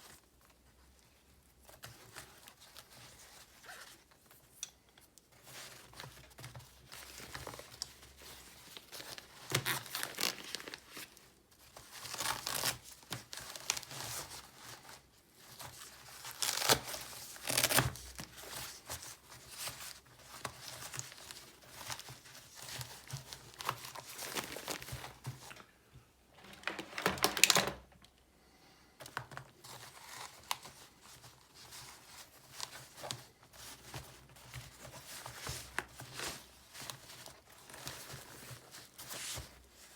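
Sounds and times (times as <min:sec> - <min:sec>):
packaging crinkling and tearing: 0:05.8 - 0:15.0, 0:15.6 - 0:25.6, 0:26.4 - 0:28.0.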